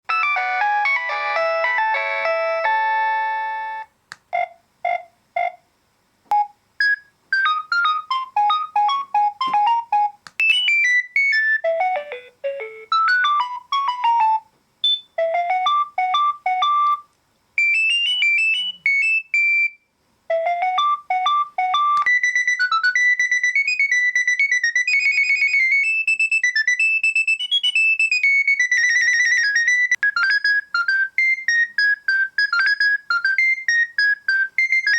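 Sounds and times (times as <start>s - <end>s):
mobile phone ringtones: 0.1s - 5.5s, 6.3s - 17.0s, 17.6s - 25.8s.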